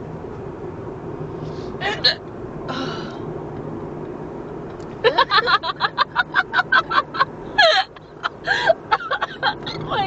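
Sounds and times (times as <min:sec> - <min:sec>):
low vehicle hum: 0:00.0 - 0:10.0
woman laughing: 0:05.0 - 0:10.0.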